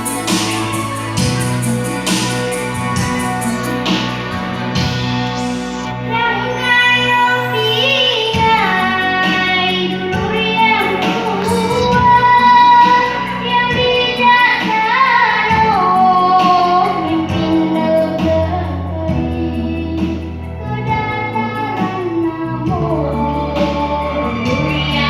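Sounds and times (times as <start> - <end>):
instrumental accompaniment: 0.0 - 25.0
girl singing: 5.5 - 25.0.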